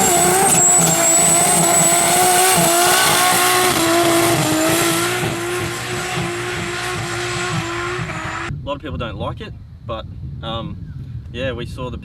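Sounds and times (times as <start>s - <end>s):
car engine at high revs: 0.0s - 8.5s.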